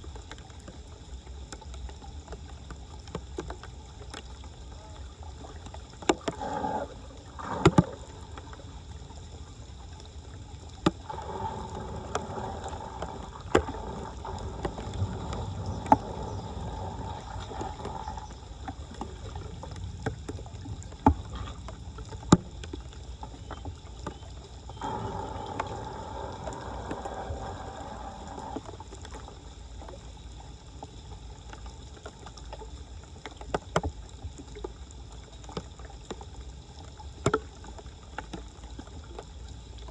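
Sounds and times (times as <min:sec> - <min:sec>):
floodwater sloshing and splashing: 0:00.0 - 0:39.9
steady hum: 0:06.2 - 0:29.8.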